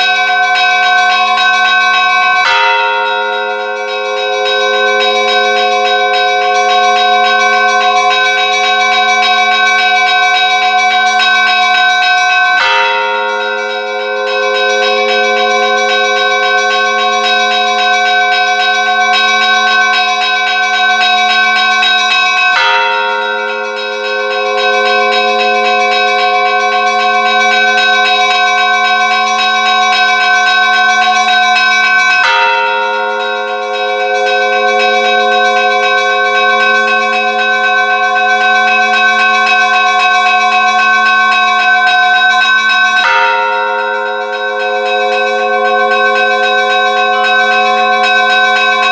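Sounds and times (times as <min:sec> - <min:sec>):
church bells ringing: 0:00.0 - 0:48.9
heavy bell strike: 0:00.0 - 0:48.9.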